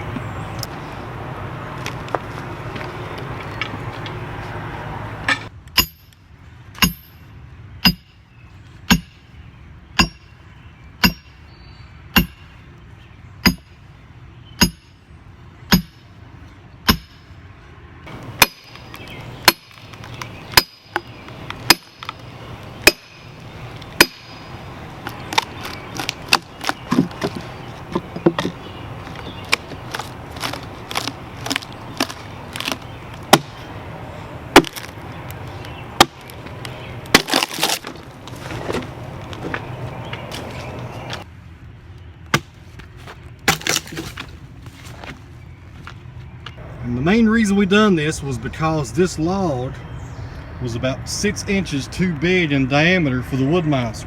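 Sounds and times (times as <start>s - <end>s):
heavy blows splitting a log: 6.8s - 7.2s, 7.8s - 8.1s, 8.9s - 9.2s, 10.0s - 10.3s, 11.0s - 11.4s, 12.2s - 12.5s, 13.4s - 13.7s, 14.6s - 14.9s, 15.7s - 16.0s, 16.8s - 17.2s, 18.1s - 33.6s, 34.5s - 35.0s, 36.0s - 40.8s, 42.3s - 45.2s.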